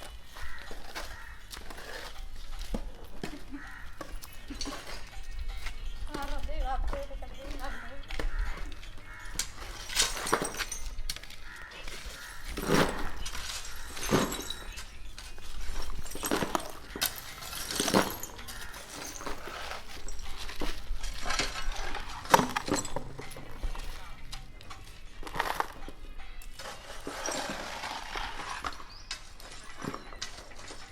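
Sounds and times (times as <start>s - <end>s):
rubble clattering and crashing: 6.8s - 30.9s
glass clinking and breaking: 7.5s - 30.9s.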